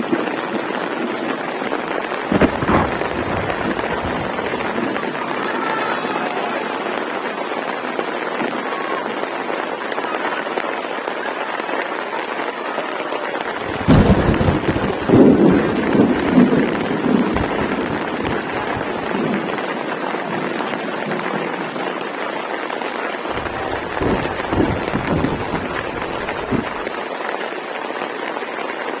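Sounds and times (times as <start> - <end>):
steady rain: 0.0 - 29.0
thunder clap and rumbling: 2.1 - 5.6, 13.6 - 19.7, 23.3 - 26.9.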